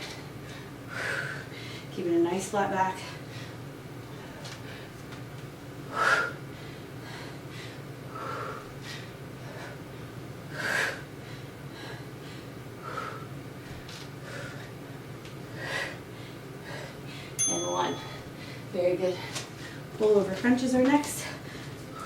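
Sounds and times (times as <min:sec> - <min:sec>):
steady low hum: 0:00.0 - 0:22.0
person breathing forcefully: 0:05.9 - 0:13.4.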